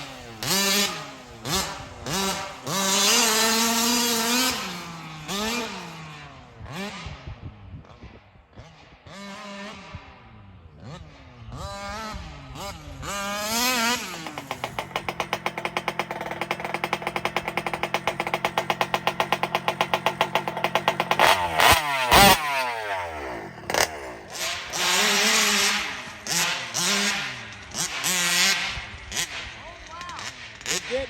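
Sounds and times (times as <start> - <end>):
small two-stroke engine revving: 0.0 - 31.0.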